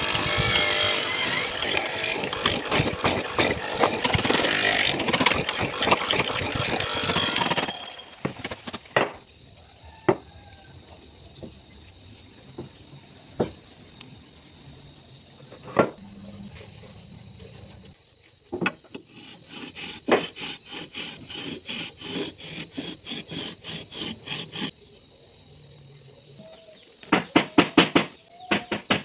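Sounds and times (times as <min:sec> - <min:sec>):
wood rubbing on drum sander: 0:00.0 - 0:08.2, 0:19.0 - 0:24.7
sander high whine: 0:00.0 - 0:08.7, 0:18.9 - 0:24.7.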